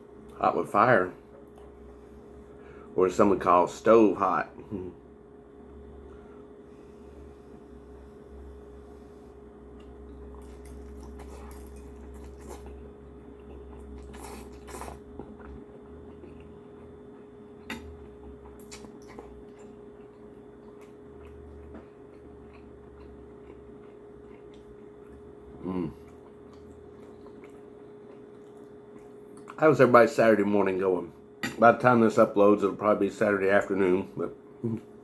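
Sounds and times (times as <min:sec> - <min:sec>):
low hum: 0:00.0 - 0:29.5
person eating: 0:06.1 - 0:29.6.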